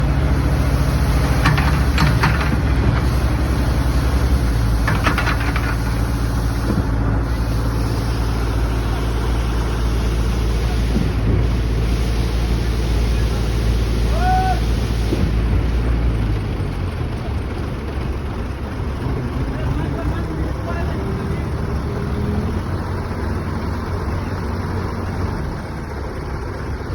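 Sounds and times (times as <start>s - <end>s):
heavy machine engine droning: 0.0s - 26.9s
clatter bursts: 0.6s - 7.4s.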